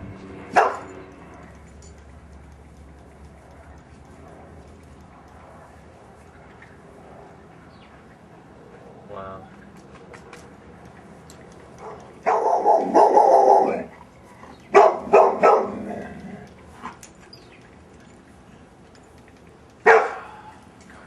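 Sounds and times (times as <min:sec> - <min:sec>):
dog barking: 0:00.5 - 0:00.9, 0:11.8 - 0:13.9, 0:14.7 - 0:16.0, 0:19.8 - 0:20.4.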